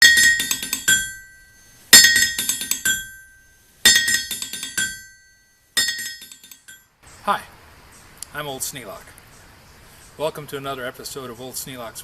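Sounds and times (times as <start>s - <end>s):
ringing glassy clinks: 0.0s - 6.9s.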